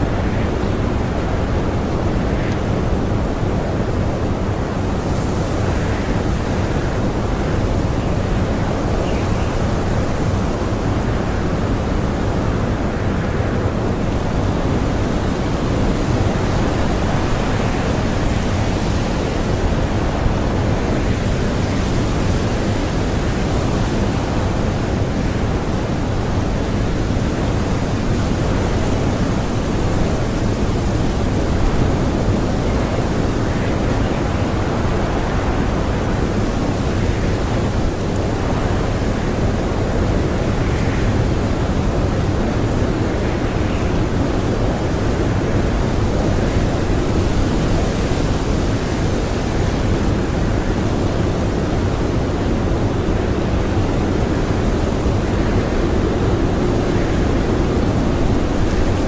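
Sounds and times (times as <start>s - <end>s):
strong blizzard wind: 0.0s - 59.0s.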